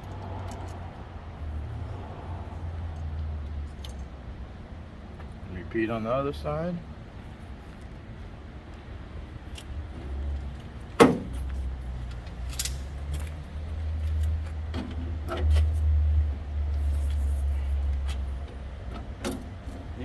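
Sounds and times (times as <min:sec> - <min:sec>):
metal clicks and clinks: 0:12.5 - 0:13.3.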